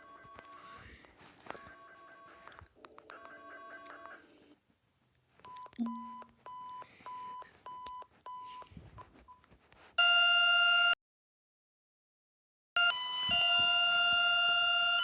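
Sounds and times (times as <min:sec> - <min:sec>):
short beeps: 0:05.5 - 0:08.5
electronic alert tone chord: 0:05.8 - 0:06.2.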